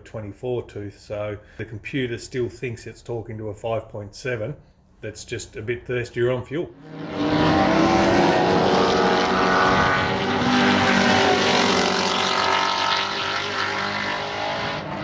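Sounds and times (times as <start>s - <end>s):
race car engine revving: 6.8s - 15.0s.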